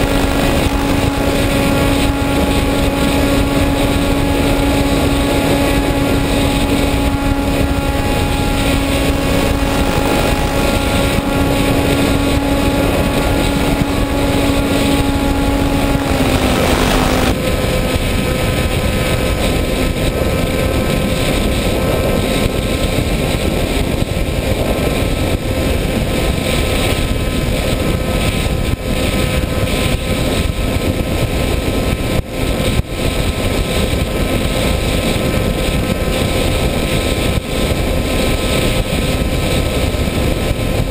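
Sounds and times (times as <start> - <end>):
heavy rush of noise: 0.0 - 26.4
model aircraft motor humming: 0.0 - 28.4.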